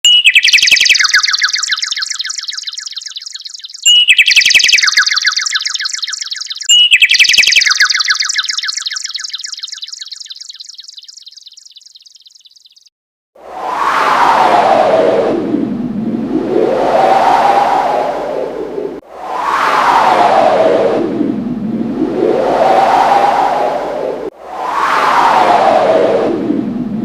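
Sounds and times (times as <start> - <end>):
electronic keyboard bird-call trill: 0.0 - 12.9.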